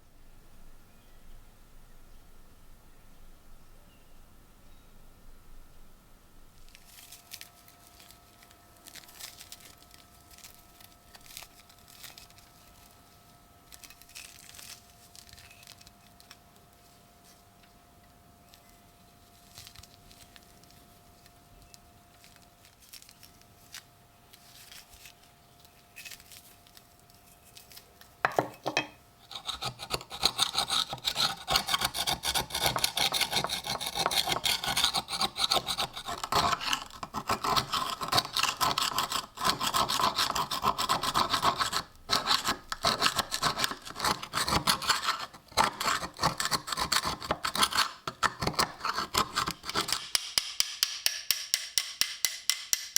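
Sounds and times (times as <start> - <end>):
faint steady tone: 0.0 - 6.5
knife blade being scraped: 28.3 - 50.4.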